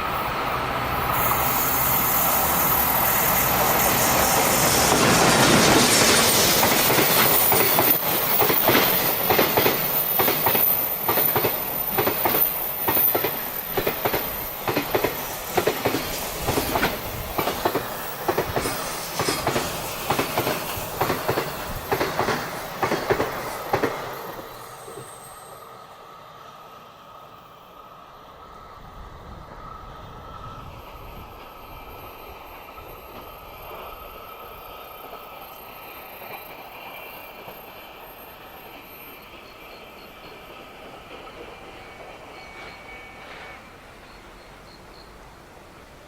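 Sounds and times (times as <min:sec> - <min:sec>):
electric train rushing past: 0:00.0 - 0:46.0
train wheels clacking over rail joints: 0:03.2 - 0:25.2.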